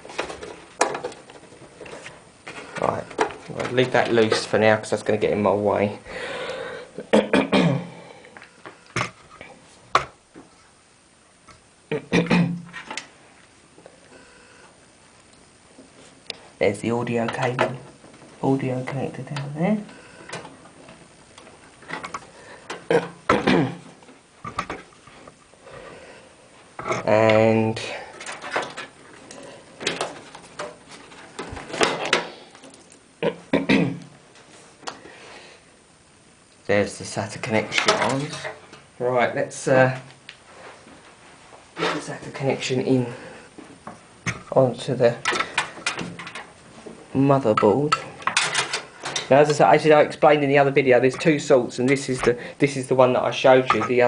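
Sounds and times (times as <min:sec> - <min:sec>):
cables and plastic parts rattling: 0:00.0 - 0:04.9, 0:20.2 - 0:23.2, 0:28.1 - 0:33.0, 0:37.4 - 0:38.9, 0:44.2 - 0:50.2, 0:50.9 - 0:54.0.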